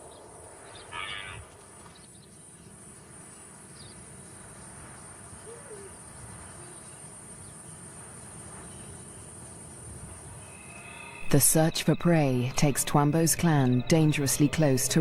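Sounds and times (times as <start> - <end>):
crickets chirring: 0.0 - 15.0
low ambient noise: 0.0 - 15.0.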